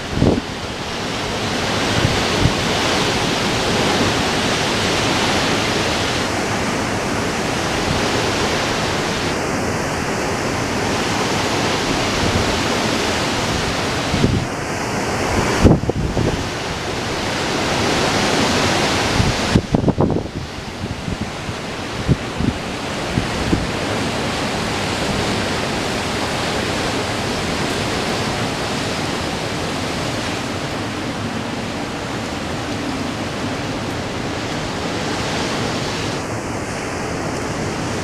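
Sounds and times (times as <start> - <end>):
wind buffeting microphone: 0.0 - 38.0.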